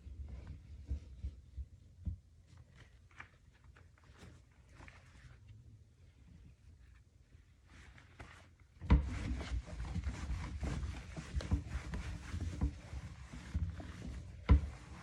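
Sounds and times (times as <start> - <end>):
rubbing and scrubbing: 7.7 - 15.0.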